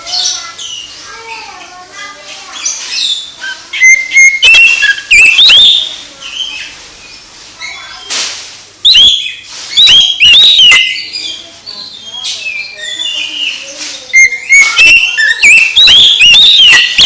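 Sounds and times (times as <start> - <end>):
songbird whistling: 2.9 - 6.7, 8.8 - 17.0.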